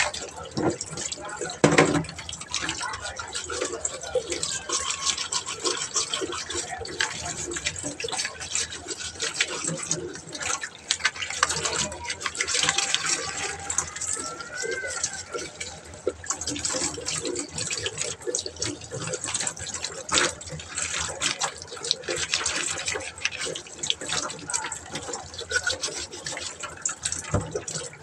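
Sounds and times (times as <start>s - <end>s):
filter being scrubbed: 0.0s - 28.0s
tap water running and splashing: 0.0s - 28.0s
small knocks and clatters: 0.4s - 2.3s, 22.2s - 28.0s.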